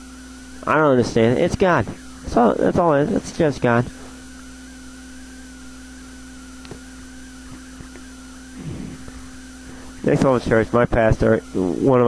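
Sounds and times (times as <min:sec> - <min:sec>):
electrical hum: 0:00.0 - 0:12.0
faint wavering high whine: 0:00.0 - 0:12.0
small click: 0:06.6 - 0:06.8.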